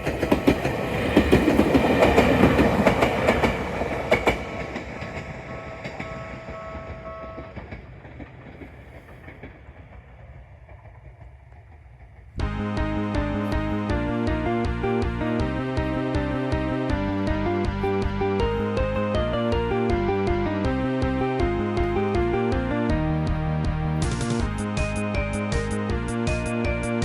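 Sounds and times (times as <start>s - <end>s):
train wheels clicking over rail joints: 0.0s - 20.2s, 21.4s - 26.9s
electronic crossing warning bell: 5.4s - 7.6s, 24.1s - 27.0s
music: 12.4s - 27.0s.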